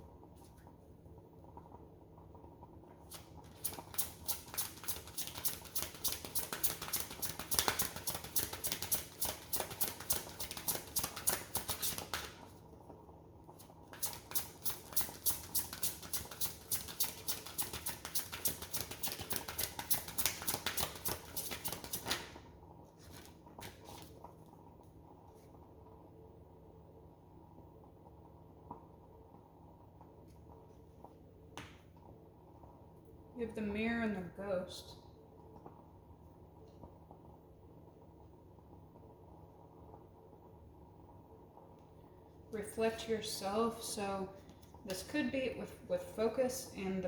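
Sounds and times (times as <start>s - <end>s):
cards being shuffled: 3.1s - 12.4s, 13.9s - 22.4s, 23.0s - 24.3s.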